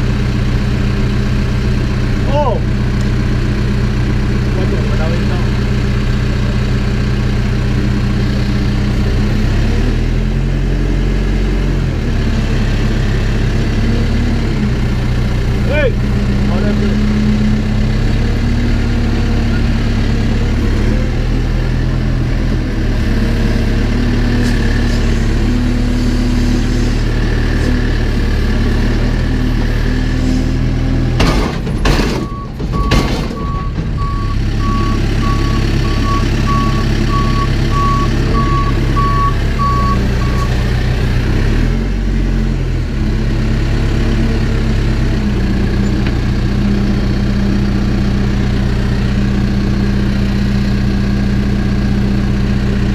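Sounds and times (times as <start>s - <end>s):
backhoe engine running: 0.0s - 52.9s
loud knocks: 31.2s - 34.0s
reversing alarm beeping: 32.1s - 40.5s.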